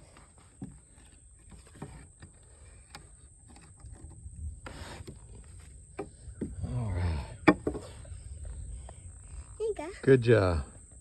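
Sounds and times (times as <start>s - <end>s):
wooden timber knocking: 7.4s - 8.0s.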